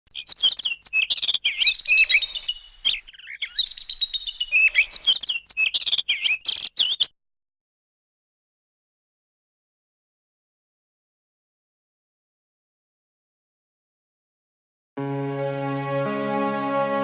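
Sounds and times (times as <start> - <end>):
birds chirping and twittering: 0.1 - 7.1.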